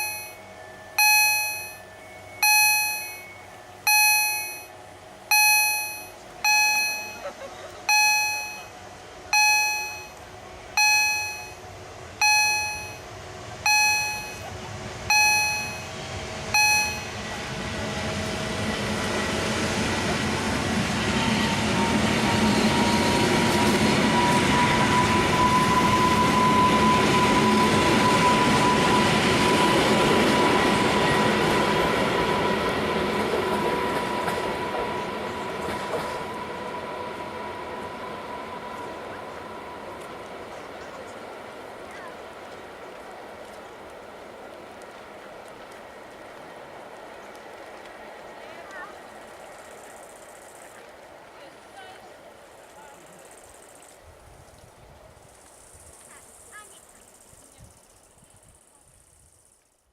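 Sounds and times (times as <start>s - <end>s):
train running noise: 0.0s - 58.7s
level crossing gong: 9.3s - 10.2s, 10.8s - 11.6s, 12.2s - 13.0s, 13.6s - 14.5s, 15.1s - 15.9s, 16.5s - 17.2s.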